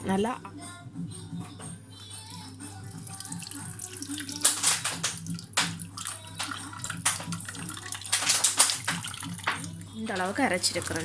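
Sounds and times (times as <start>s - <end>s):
liquid sloshing and splashing: 2.9s - 11.0s.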